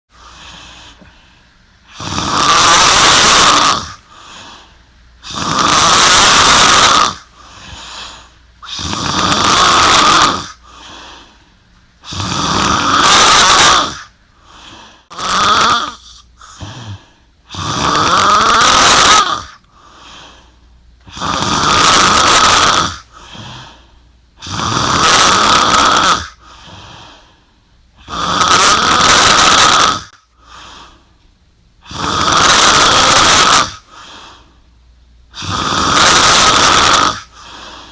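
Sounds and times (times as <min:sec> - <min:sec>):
quiet breaths: 0:00.1 - 0:02.0, 0:04.0 - 0:05.2, 0:07.2 - 0:08.7, 0:10.5 - 0:12.1, 0:14.1 - 0:15.1, 0:16.0 - 0:17.5, 0:19.6 - 0:21.1, 0:23.0 - 0:24.4, 0:26.3 - 0:28.1, 0:30.2 - 0:31.9, 0:33.8 - 0:35.4, 0:37.2 - 0:37.9
woman snoring: 0:01.9 - 0:04.6, 0:05.2 - 0:11.3, 0:12.0 - 0:20.2, 0:21.1 - 0:23.8, 0:24.4 - 0:27.2, 0:28.0 - 0:30.9, 0:31.8 - 0:34.5, 0:35.3 - 0:37.9.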